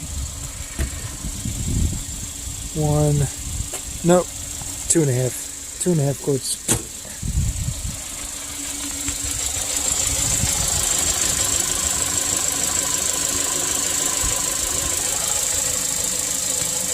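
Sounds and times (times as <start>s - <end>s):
car engine running: 0.0s - 16.9s
low thud: 0.4s - 1.2s, 6.7s - 7.4s.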